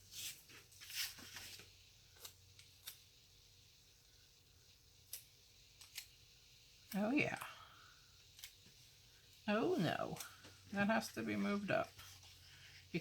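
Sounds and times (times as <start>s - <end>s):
paper rustling: 0.0s - 2.3s.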